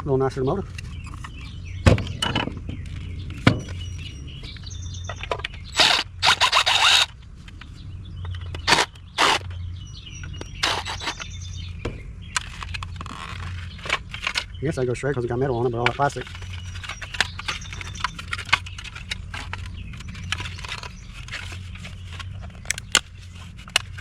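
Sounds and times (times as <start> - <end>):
quick scraping rattles: 5.5 - 7.2, 8.5 - 9.6, 10.6 - 11.3, 15.8 - 24.0.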